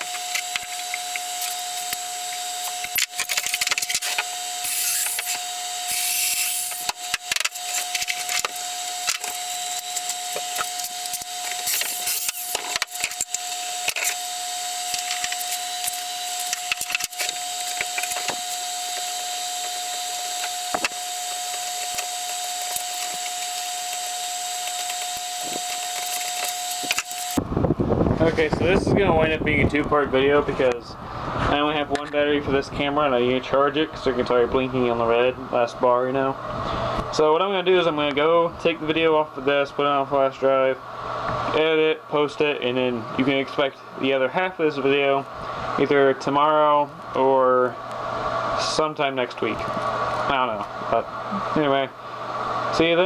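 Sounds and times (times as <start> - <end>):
steady faint whine: 0.0 - 53.0
tools and metal parts clicking: 2.6 - 14.2.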